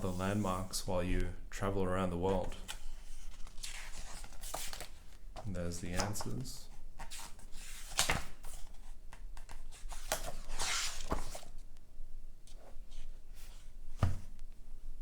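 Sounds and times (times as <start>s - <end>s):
papery rustle: 2.3s - 6.4s
book pages soft knocks: 13.9s - 14.4s.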